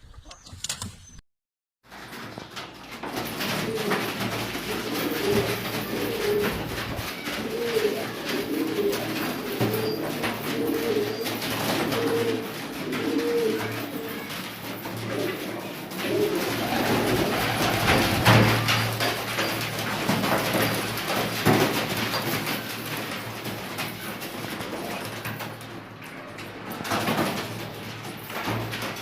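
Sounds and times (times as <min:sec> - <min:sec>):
pigeons cooing: 0:03.2 - 0:25.2.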